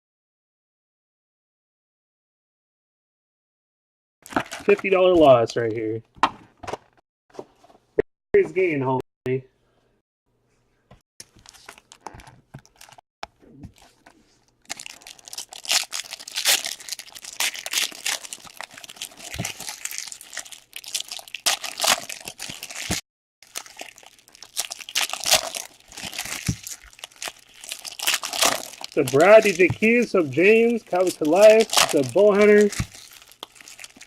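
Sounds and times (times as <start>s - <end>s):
wrappers crinkling and tearing: 11.2s - 13.0s, 13.8s - 34.0s.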